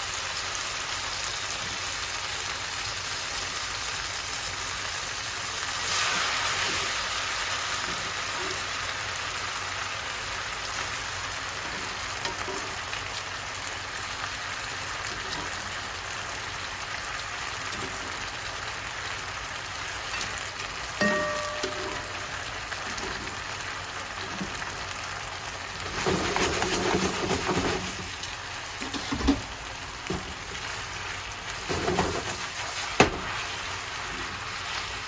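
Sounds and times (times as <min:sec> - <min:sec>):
food sizzling in a frying pan: 0:00.0 - 0:35.0
short electronic beep: 0:21.0 - 0:22.5.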